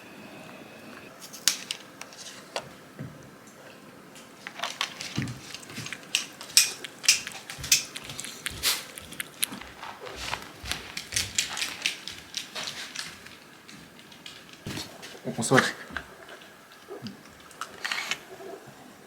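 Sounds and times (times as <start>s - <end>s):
dog chewing: 4.4s - 18.7s.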